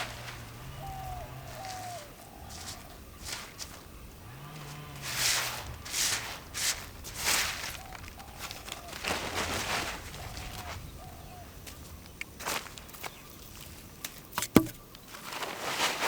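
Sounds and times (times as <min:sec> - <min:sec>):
dry straw swishing: 0:00.0 - 0:11.0, 0:15.1 - 0:16.0.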